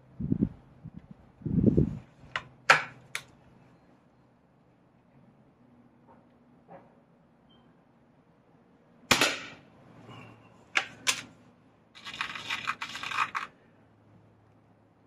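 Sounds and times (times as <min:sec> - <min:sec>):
air rifle shot: 0:09.1 - 0:09.6
rattling and scraping: 0:12.0 - 0:13.5.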